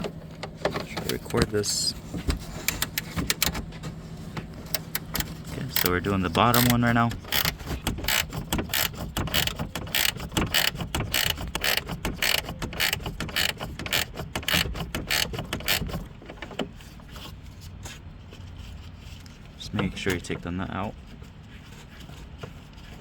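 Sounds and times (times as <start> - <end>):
ratchet wrench clicking: 4.7 - 16.1.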